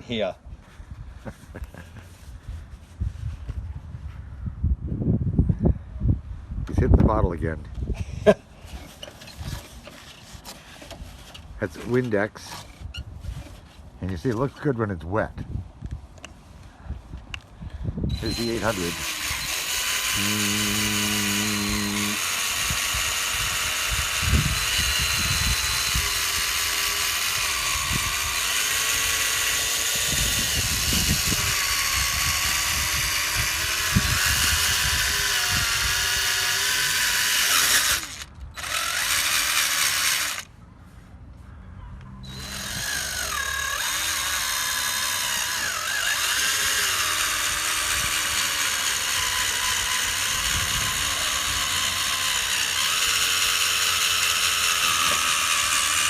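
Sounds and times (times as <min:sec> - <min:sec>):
electric drill sanding: 0:18.1 - 0:40.5, 0:42.3 - 0:56.0.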